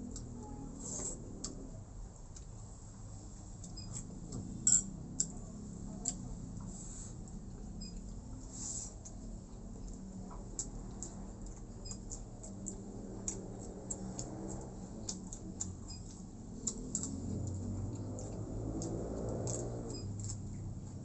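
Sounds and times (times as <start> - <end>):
wet chewing and smacking: 9.0 - 21.0.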